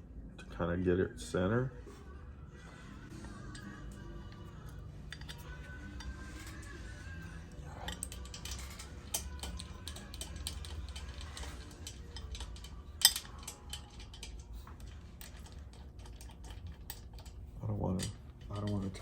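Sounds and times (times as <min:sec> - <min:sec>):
metallic clicks of hand tools: 0:03.3 - 0:06.7, 0:07.8 - 0:17.4.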